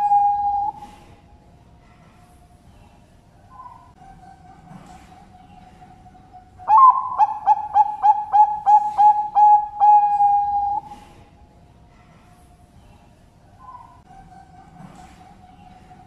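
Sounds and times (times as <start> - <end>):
dove cooing song: 0.0 - 1.2, 3.6 - 11.1.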